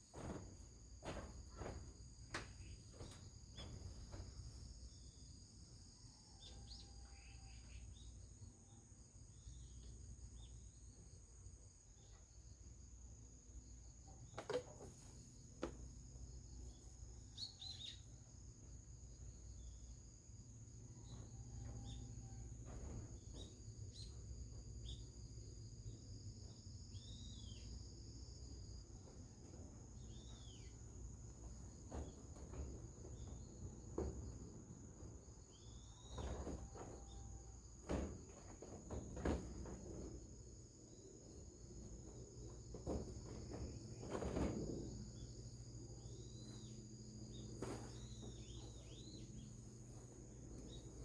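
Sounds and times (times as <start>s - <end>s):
high insect trill: 0.0s - 51.0s
bird chirps: 17.3s - 18.2s, 46.0s - 49.7s.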